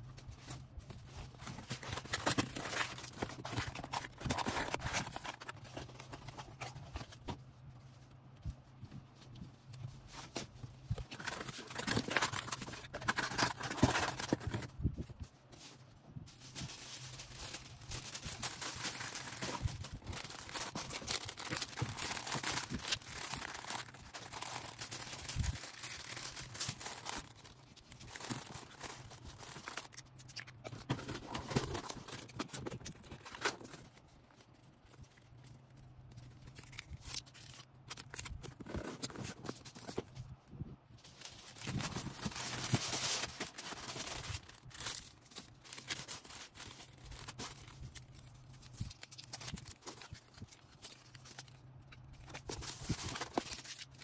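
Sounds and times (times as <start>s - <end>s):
plastic packaging crinkling: 0.3s - 7.3s, 9.8s - 15.1s, 15.7s - 40.2s, 41.0s - 54.0s.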